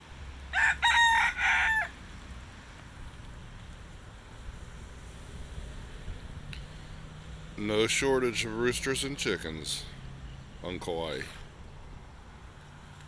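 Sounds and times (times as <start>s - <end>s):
low steady rumble: 0.0s - 13.0s
rooster crowing: 0.5s - 2.0s.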